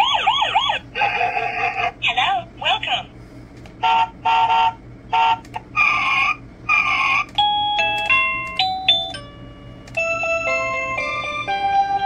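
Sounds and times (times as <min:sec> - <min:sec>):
doorbell chime tune: 0:07.4 - 0:12.0.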